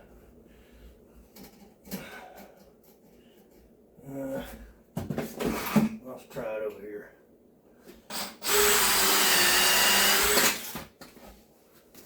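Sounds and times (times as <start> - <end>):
power drill driving a screw: 8.1 - 10.8.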